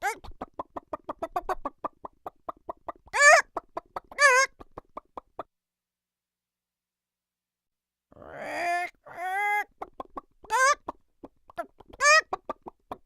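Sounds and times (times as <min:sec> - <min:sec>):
cartoon chicken clucking: 0:00.0 - 0:05.5, 0:08.2 - 0:13.0
warbling chicken squawks: 0:03.1 - 0:04.8, 0:08.2 - 0:12.7.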